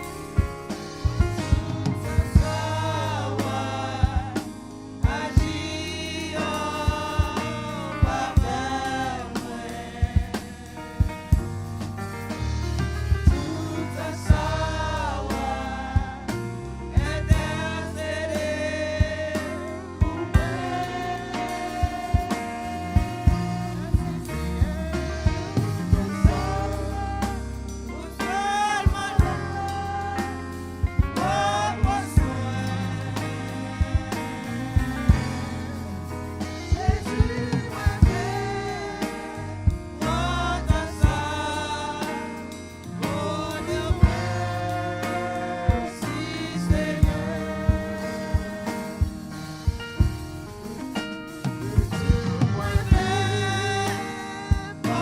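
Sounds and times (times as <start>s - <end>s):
choir singing gospel music: 0.0s - 55.0s
drum beats: 0.0s - 55.0s
person singing: 13.3s - 15.4s, 18.6s - 30.4s, 51.9s - 55.0s.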